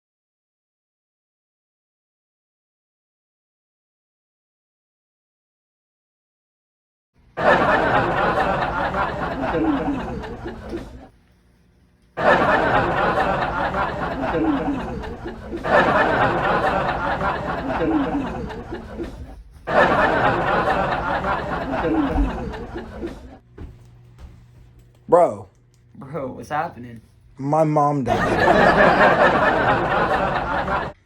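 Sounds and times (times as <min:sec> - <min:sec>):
audience laugh track: 0:07.4 - 0:11.1, 0:12.2 - 0:23.4, 0:28.1 - 0:31.0.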